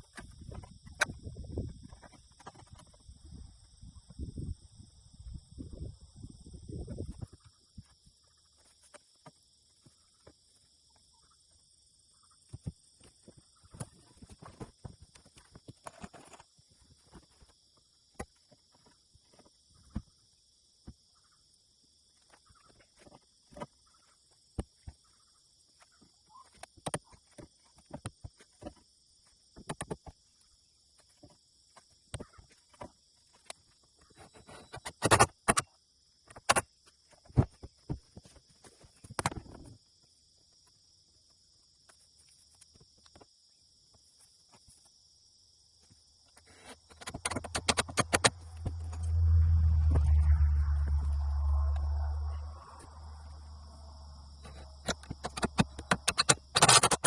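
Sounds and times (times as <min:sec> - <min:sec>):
knocks and clicks of timber and tools: 0:32.1 - 0:38.4, 0:46.4 - 0:49.0, 0:54.4 - 0:57.0
rapid clicks: 0:47.0 - 0:48.4, 0:54.8 - 0:57.0
loud low hum: 0:48.2 - 0:54.4.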